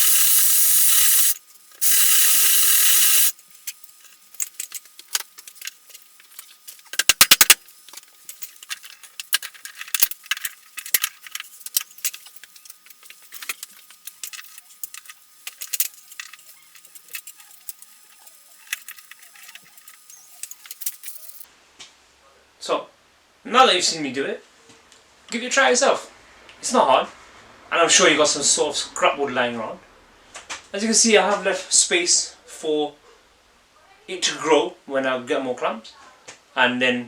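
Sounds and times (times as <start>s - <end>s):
metal clamps clicking and clattering: 3.7s - 21.4s.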